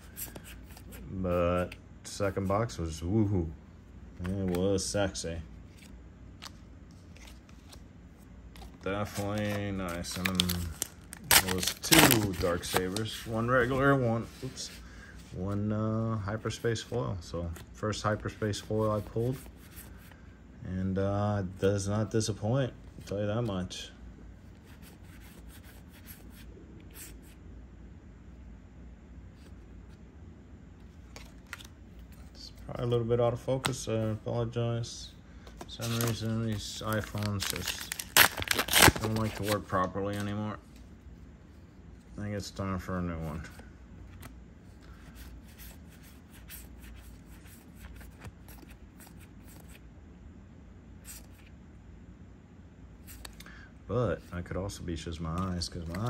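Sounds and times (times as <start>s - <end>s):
trading cards flipping and sliding: 0.0s - 2.6s, 4.2s - 15.7s, 16.4s - 20.2s, 30.8s - 34.2s, 35.4s - 40.9s, 43.2s - 49.8s, 51.0s - 51.5s, 53.0s - 53.6s, 55.2s - 56.0s
trading cards sliding together: 53.0s - 53.5s.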